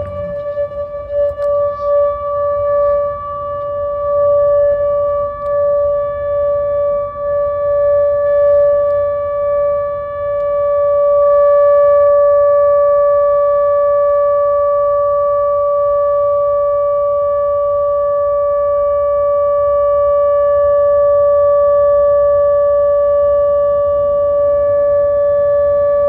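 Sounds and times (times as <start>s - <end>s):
low rumble of wind or traffic: 0.0s - 12.1s
warning siren steady tone: 0.0s - 26.0s.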